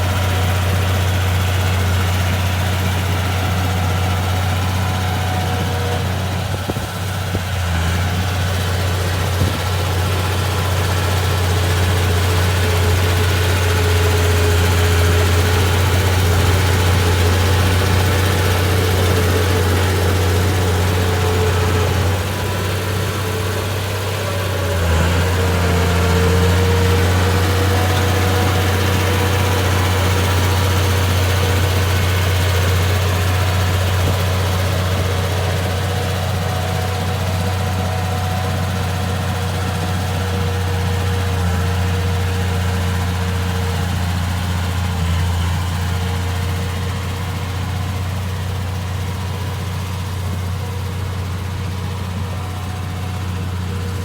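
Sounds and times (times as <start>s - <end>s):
bulldozer diesel engine running: 0.0s - 54.0s.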